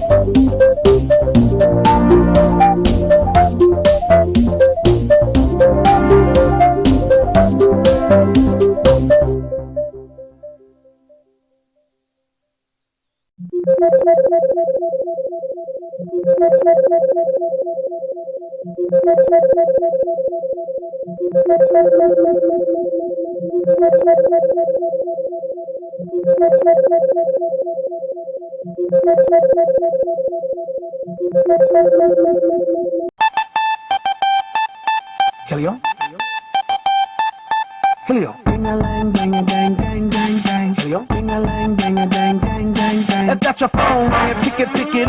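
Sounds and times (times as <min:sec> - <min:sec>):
higher-pitched ringtone tune: 0:00.0 - 0:10.0, 0:33.2 - 0:39.7.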